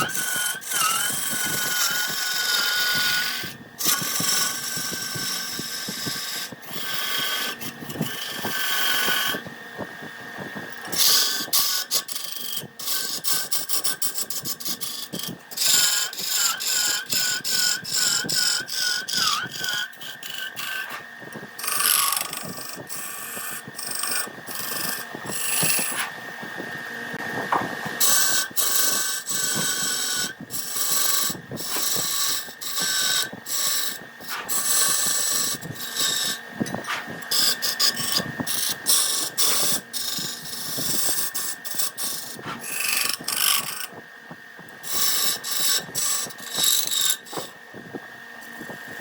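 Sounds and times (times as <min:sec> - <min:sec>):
turning tool scraping wood: 0:00.0 - 0:49.0
wood lathe whine: 0:00.0 - 0:49.0.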